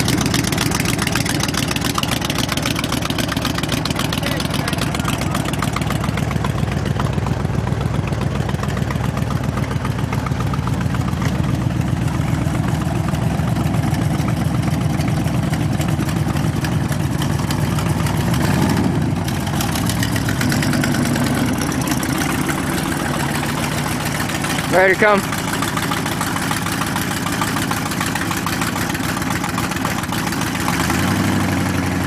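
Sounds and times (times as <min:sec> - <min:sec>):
car engine idling: 0:00.0 - 0:32.0.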